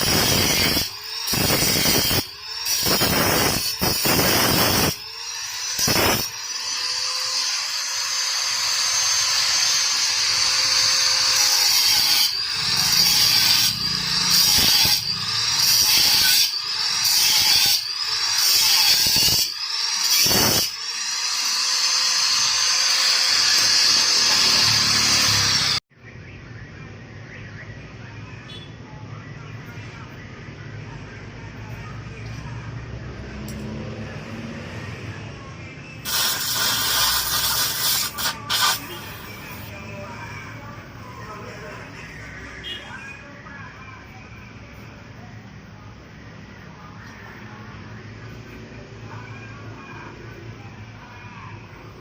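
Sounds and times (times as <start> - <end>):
power tool on metal exhaust: 0.0 - 25.8, 36.0 - 39.8.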